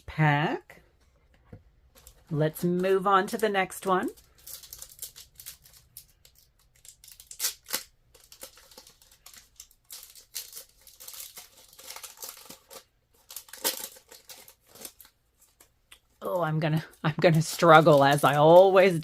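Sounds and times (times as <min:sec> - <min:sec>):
wrapper crinkling and tearing: 0:04.0 - 0:19.0.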